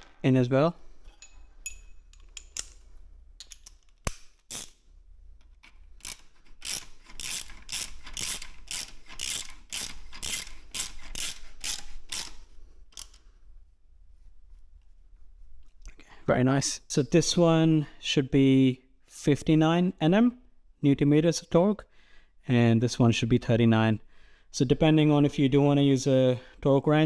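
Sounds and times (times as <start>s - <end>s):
ratchet wrench clicking: 3.5s - 4.8s, 6.0s - 13.2s.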